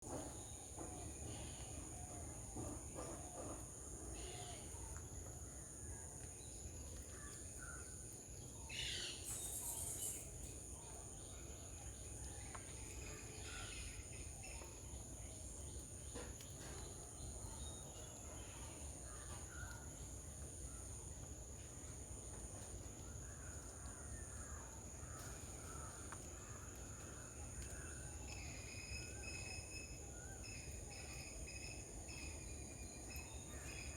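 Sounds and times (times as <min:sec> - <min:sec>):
bird calls and chirps: 0:06.9 - 0:19.8.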